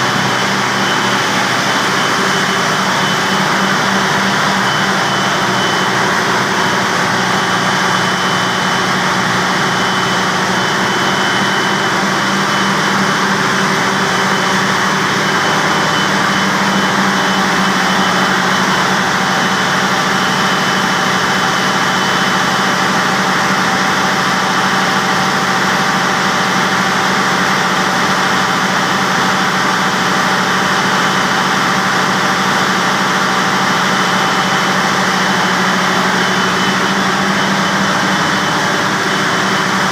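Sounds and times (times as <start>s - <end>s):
thin high whine: 0.0s - 22.8s
diesel generator engine running: 0.0s - 39.9s.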